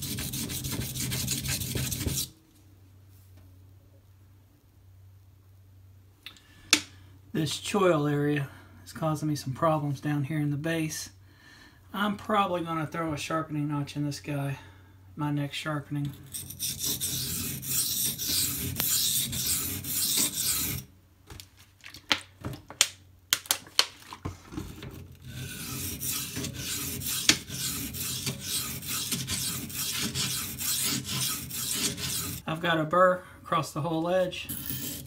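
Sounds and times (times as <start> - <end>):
knife scraping on whetstone: 0.0 - 2.3, 16.1 - 20.9, 24.7 - 32.4, 34.5 - 35.0.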